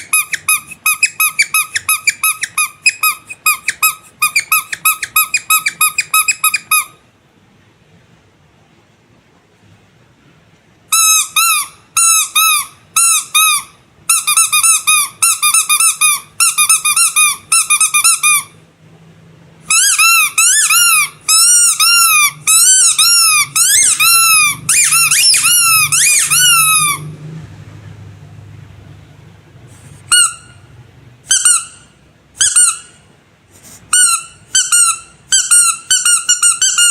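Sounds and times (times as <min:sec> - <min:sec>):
squeaky rubber toy squeaking: 0:00.0 - 0:07.0, 0:10.9 - 0:18.6, 0:19.6 - 0:27.2, 0:30.0 - 0:33.1, 0:33.8 - 0:36.9.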